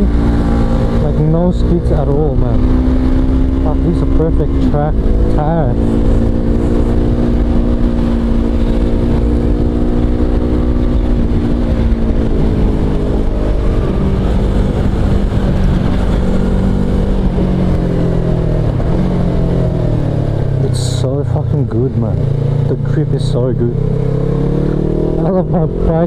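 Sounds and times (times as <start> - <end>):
motorcycle engine running: 0.0 - 26.0
wind and road noise: 0.0 - 26.0.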